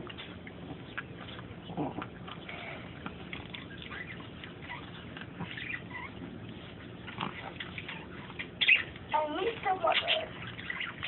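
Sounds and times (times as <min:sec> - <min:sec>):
dog teeth crunching on bone: 0:00.0 - 0:09.1.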